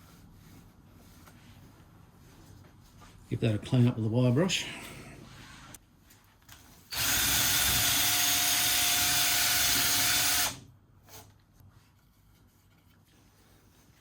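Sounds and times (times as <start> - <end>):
power tool spinning wire brush: 6.9 - 10.6.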